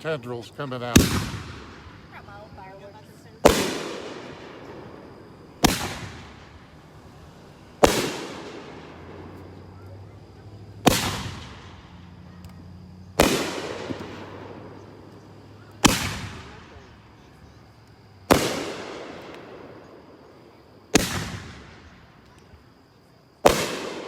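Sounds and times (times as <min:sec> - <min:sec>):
firework bangs with echo: 0:00.9 - 0:02.0, 0:03.4 - 0:06.8, 0:07.8 - 0:09.6, 0:10.6 - 0:12.2, 0:13.1 - 0:17.3, 0:18.2 - 0:20.2, 0:20.9 - 0:22.1, 0:23.4 - 0:24.0.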